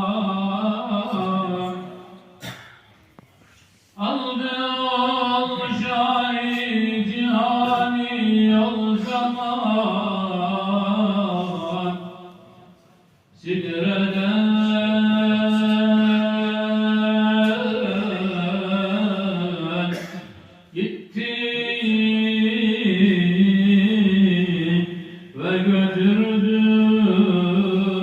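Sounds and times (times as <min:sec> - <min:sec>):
man chanting a hymn: 0:00.0 - 0:02.4, 0:04.0 - 0:12.8, 0:13.4 - 0:28.0.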